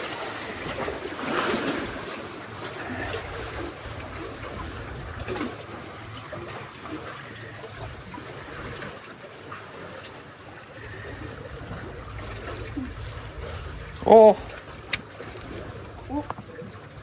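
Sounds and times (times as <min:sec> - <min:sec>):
seawater sloshing and trickling: 0:00.0 - 0:17.0
wind rumbling on microphone: 0:00.4 - 0:09.3, 0:10.0 - 0:17.0.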